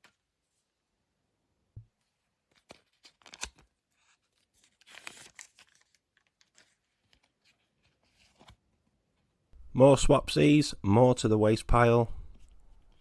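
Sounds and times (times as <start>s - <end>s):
wrapper being torn and crinkled: 2.6s - 3.7s, 4.3s - 6.8s.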